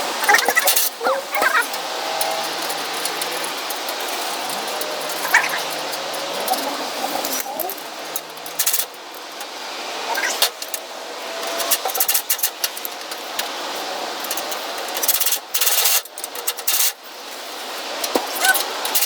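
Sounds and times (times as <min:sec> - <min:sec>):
metal tools clinking and rattling: 0:00.3 - 0:08.9.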